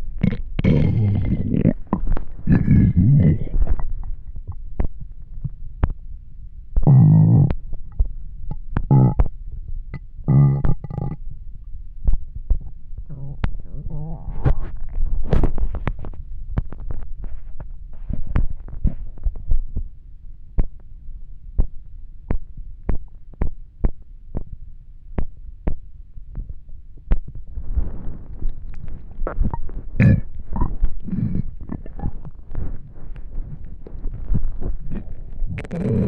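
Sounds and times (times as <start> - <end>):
stomach growling and gurgling: 0.0 - 6.1, 6.8 - 11.3, 12.0 - 20.8, 25.2 - 36.0
sharp pops and clicks: 3.7 - 6.0.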